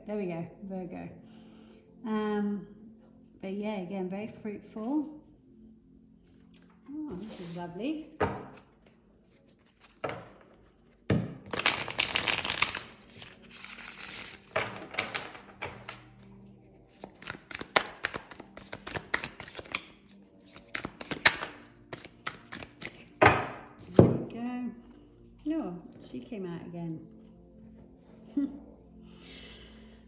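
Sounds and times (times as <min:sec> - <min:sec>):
cards being shuffled: 0:08.2 - 0:10.6, 0:11.5 - 0:24.2
cards clicking and tapping: 0:11.1 - 0:13.4, 0:14.2 - 0:16.1, 0:17.0 - 0:24.2.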